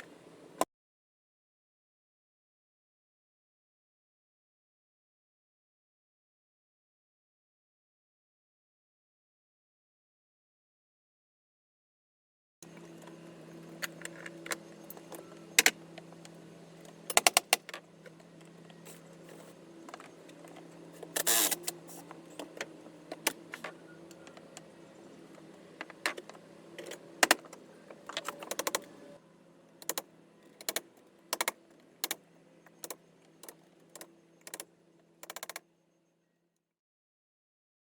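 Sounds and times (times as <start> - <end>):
steady low hum: 12.6 - 36.4.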